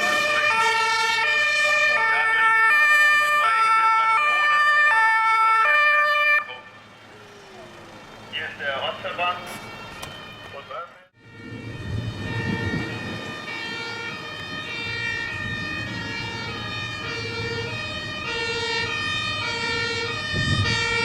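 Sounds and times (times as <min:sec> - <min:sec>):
two-tone siren: 0:00.0 - 0:06.9, 0:07.8 - 0:21.0
vehicle engine running: 0:06.4 - 0:11.4.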